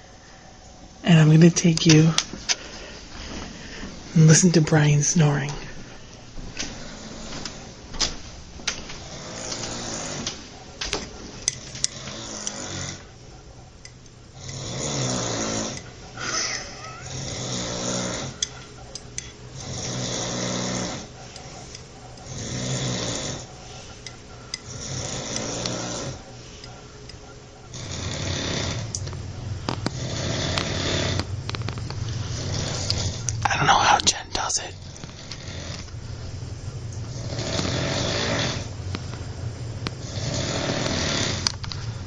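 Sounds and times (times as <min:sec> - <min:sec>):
man snoring heavily: 0:06.7 - 0:07.8, 0:09.0 - 0:10.3, 0:11.9 - 0:13.2, 0:14.4 - 0:18.4, 0:19.6 - 0:21.1, 0:22.3 - 0:23.5, 0:24.6 - 0:26.2, 0:27.7 - 0:29.0, 0:29.8 - 0:31.3, 0:32.3 - 0:33.9, 0:34.8 - 0:35.9, 0:37.1 - 0:38.8, 0:40.0 - 0:41.6.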